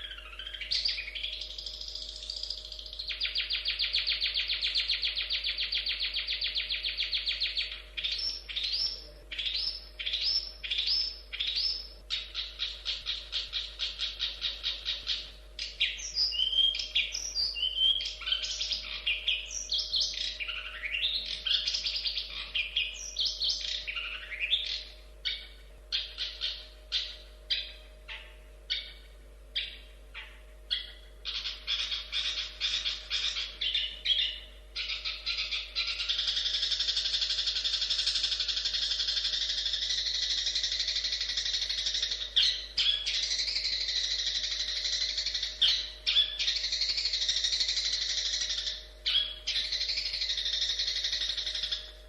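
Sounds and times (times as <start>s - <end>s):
bird chattering: 0.0s - 52.0s
bird singing whistled notes: 0.0s - 52.0s.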